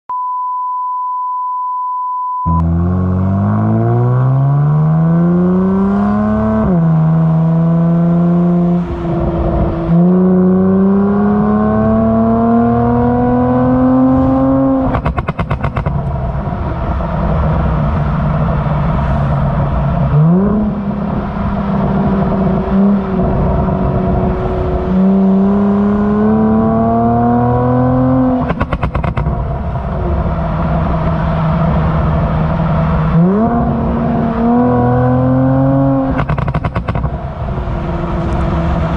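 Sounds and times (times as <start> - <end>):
car engine accelerating: 2.5 - 38.9
exhaust crackles and pops: 14.8 - 16.2, 28.4 - 29.5, 36.1 - 37.2.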